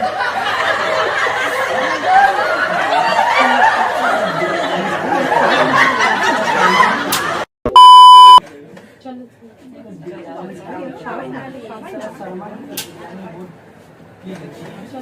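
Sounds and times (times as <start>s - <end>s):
people laughing: 0.0s - 7.4s.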